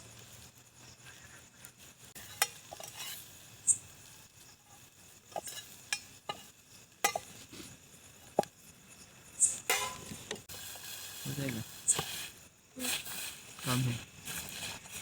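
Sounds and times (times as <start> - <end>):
faint sizzle: 0.0 - 15.0
spoon stirring in a pot: 2.2 - 3.3, 4.7 - 7.5
spoon clinking against metal pot: 5.3 - 7.3, 9.7 - 10.0.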